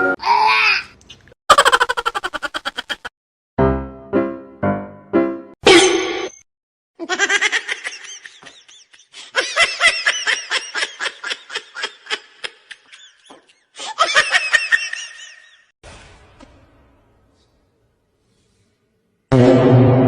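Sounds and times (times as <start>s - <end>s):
high-pitched laughter: 1.5s - 3.1s, 7.0s - 15.6s.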